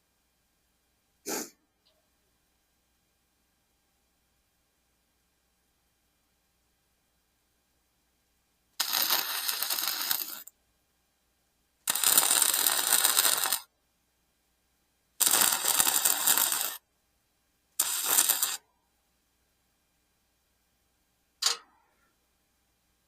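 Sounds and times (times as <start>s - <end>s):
welder arc crackle: 8.8s - 10.6s, 11.8s - 13.7s, 15.2s - 16.8s, 17.8s - 18.6s.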